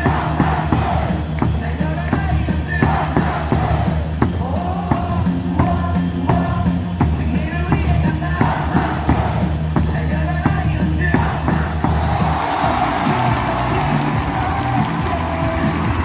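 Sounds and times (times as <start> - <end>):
amplified stadium music: 0.0 - 16.0
crowd singing and shouting: 0.0 - 16.0
sharp claps or drum hits: 12.2 - 16.0.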